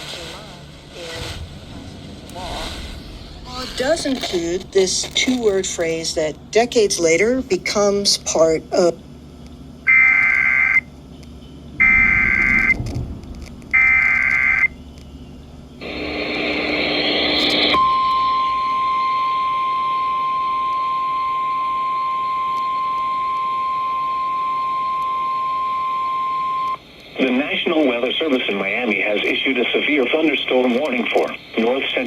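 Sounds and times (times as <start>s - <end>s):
warbling data tones: 1.0s - 7.2s, 11.5s - 27.4s
steady warning alarm tone: 9.9s - 11.0s, 11.6s - 14.8s, 15.8s - 27.4s.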